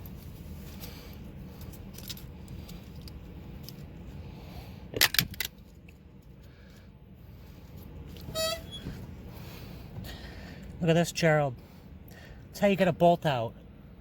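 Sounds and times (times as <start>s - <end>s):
steady low hum: 0.0s - 14.0s
short high squeak: 8.3s - 9.0s.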